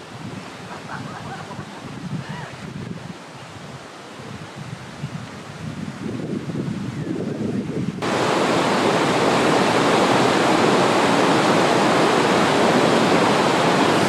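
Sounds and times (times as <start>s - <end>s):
low wind rumble: 0.0s - 14.0s
waterfall rushing: 8.0s - 14.0s.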